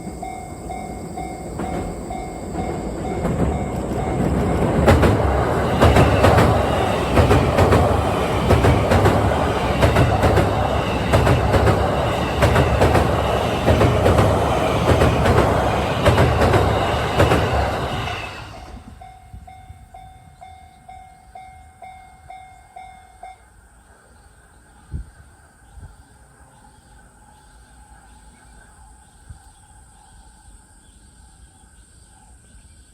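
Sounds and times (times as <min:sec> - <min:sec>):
level-crossing alarm bell: 0:00.0 - 0:15.0, 0:15.7 - 0:24.0
electric train passing: 0:00.0 - 0:29.0.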